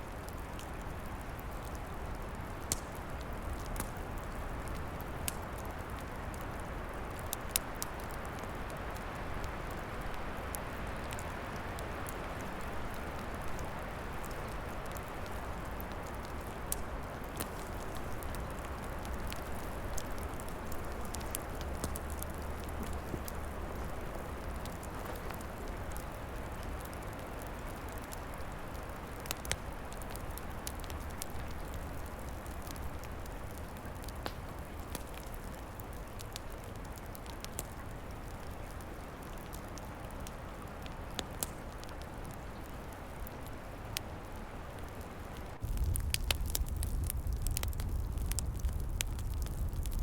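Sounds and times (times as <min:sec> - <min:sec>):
wind in trees: 0:00.0 - 0:50.0
wood fire crackling and popping: 0:00.0 - 0:50.0.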